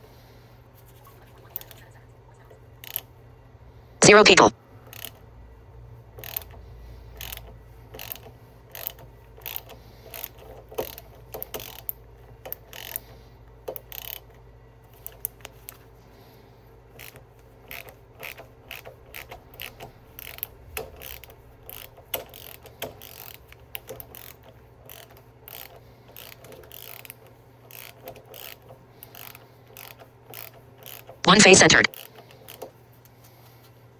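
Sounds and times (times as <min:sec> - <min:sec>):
hand ratchet clicking: 0:02.8 - 0:03.1, 0:04.9 - 0:05.2, 0:06.2 - 0:15.9, 0:16.9 - 0:31.2, 0:31.9 - 0:32.7.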